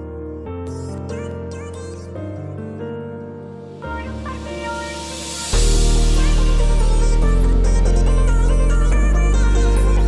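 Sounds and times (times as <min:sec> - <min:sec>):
synth background music: 0:03.7 - 0:10.0.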